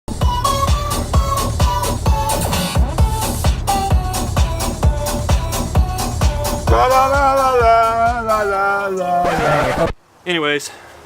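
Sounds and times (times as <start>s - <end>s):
kick drum: 0.1s - 8.4s
electronic dance music: 0.1s - 10.0s.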